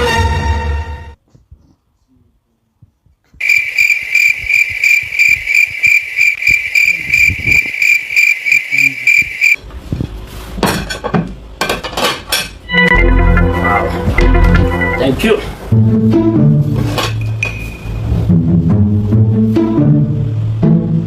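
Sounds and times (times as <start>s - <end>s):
cricket chirping trill: 3.4s - 9.6s.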